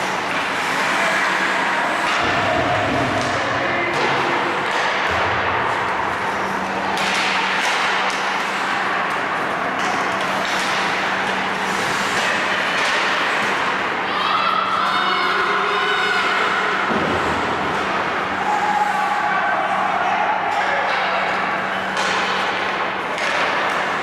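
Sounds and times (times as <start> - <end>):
skates scraping ice: 0.0 - 3.4, 5.7 - 19.8
hockey sticks and puck clacking: 0.0 - 24.0.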